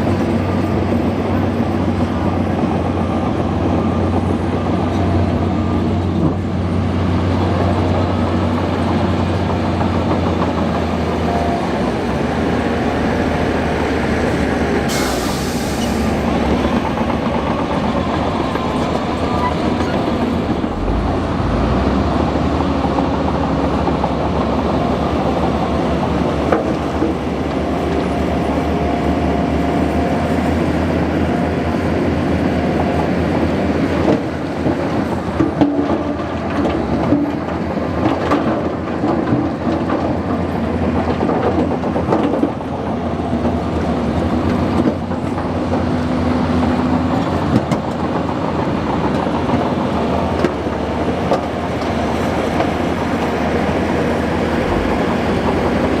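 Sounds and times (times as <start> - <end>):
bulldozer engine droning: 0.0 - 56.0
whining tones: 17.5 - 23.1.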